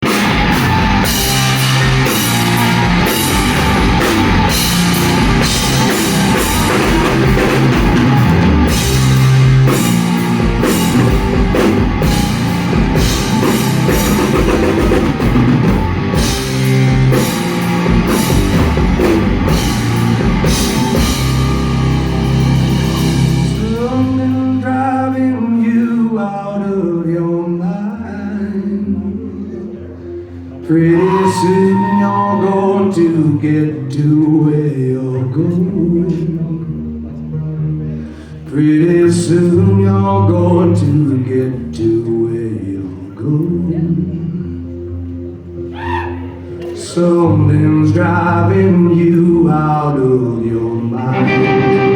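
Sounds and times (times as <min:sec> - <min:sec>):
heavy drum kit: 0:00.0 - 0:24.7
held bass note: 0:00.0 - 0:24.8
bending guitar melody: 0:00.0 - 0:25.1, 0:43.0 - 0:51.9
live rock band playing: 0:00.0 - 0:26.0, 0:46.4 - 0:51.9.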